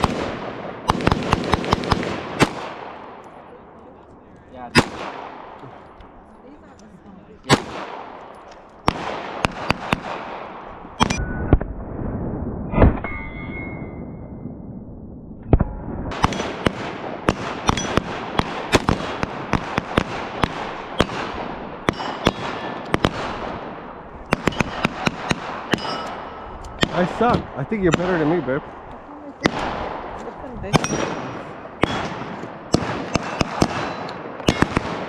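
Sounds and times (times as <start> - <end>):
pistol shots: 0.0 - 3.5, 4.7 - 6.0, 7.4 - 11.2, 16.1 - 28.8, 29.4 - 35.0.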